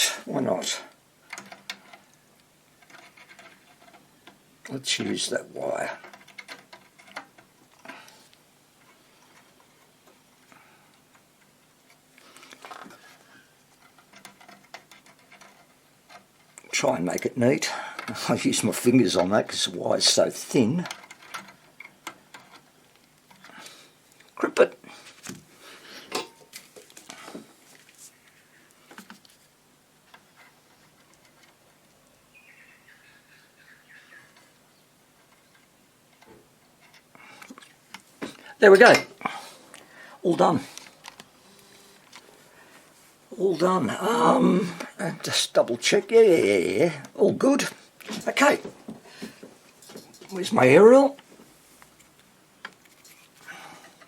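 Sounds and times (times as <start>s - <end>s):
soft wire rustles: 0.9s - 32.2s, 46.4s - 54.0s
pliers and wire clicking: 1.3s - 4.4s, 20.6s - 24.4s.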